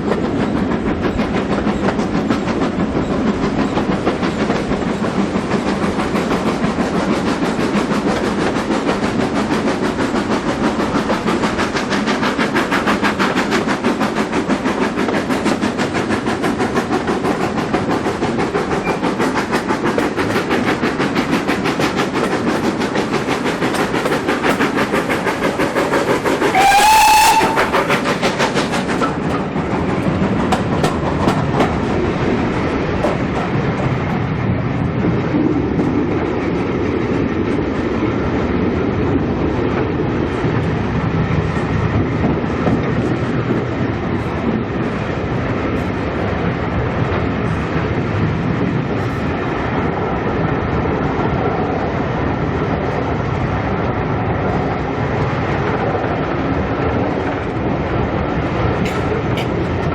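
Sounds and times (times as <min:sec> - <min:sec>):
steam train running: 0:00.0 - 0:59.9
steam locomotive whistle: 0:26.5 - 0:28.0.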